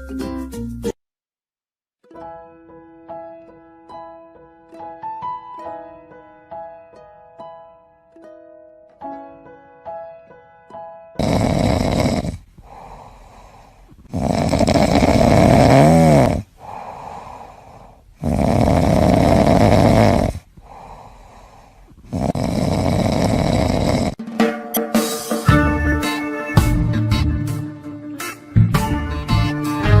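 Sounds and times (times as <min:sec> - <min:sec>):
animal snoring: 0:11.2 - 0:24.2.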